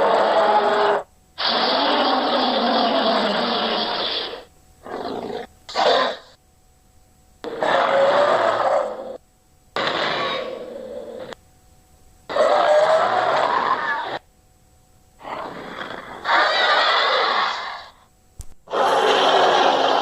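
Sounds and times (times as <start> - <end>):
gravelly monster growls: 7.5 - 9.2, 15.2 - 17.9.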